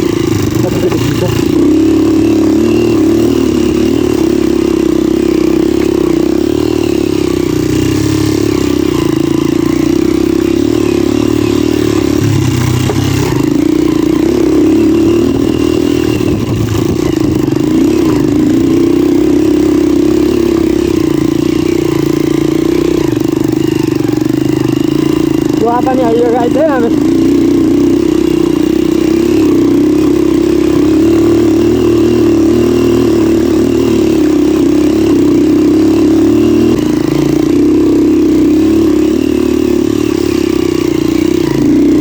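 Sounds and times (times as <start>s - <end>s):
motorcycle engine running: 0.0s - 42.0s
wind and road noise: 3.0s - 25.4s.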